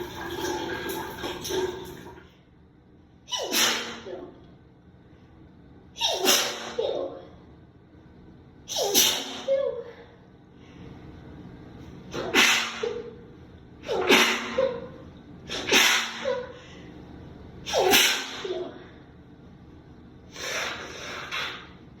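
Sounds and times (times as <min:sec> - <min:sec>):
person sneezing: 0:03.3 - 0:04.2, 0:06.0 - 0:07.0, 0:08.7 - 0:09.7, 0:12.2 - 0:13.2, 0:13.8 - 0:16.6, 0:17.7 - 0:18.8.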